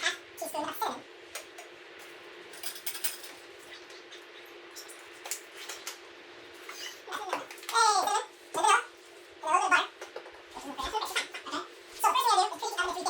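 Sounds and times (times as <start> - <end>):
kitchen items clinking: 2.5 - 3.4.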